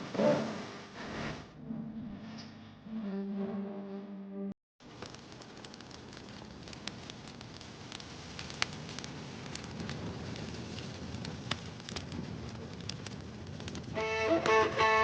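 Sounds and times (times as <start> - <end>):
wood fire crackling and popping: 4.8 - 15.0.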